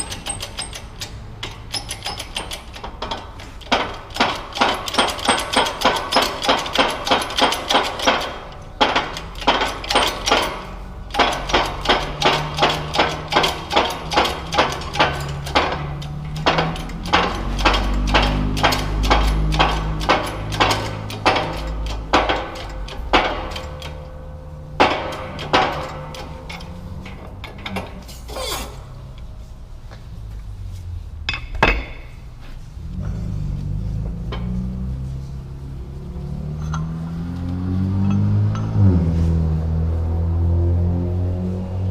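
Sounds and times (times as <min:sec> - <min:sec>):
rapid hammer blows: 0:03.6 - 0:24.0.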